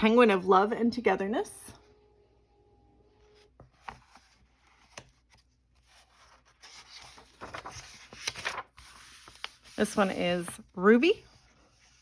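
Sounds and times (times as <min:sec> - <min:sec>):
paper pages rustling: 0:03.2 - 0:12.0.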